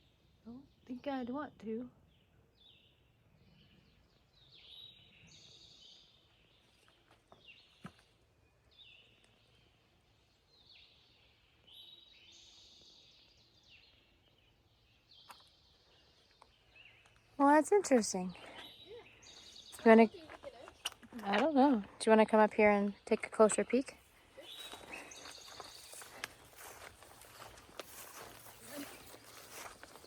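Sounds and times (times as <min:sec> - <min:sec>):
forest ambience: 0:00.0 - 0:30.0
bird singing high phrases: 0:00.3 - 0:06.6, 0:22.1 - 0:30.0.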